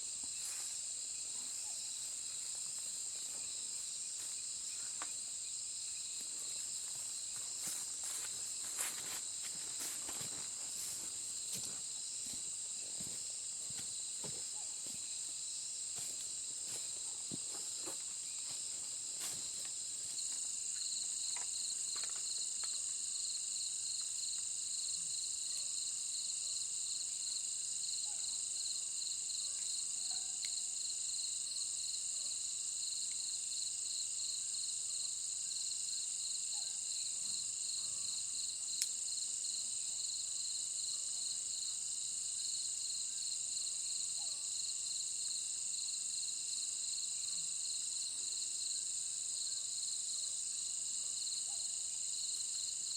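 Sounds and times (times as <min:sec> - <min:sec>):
insects chirring: 0:00.0 - 0:25.6.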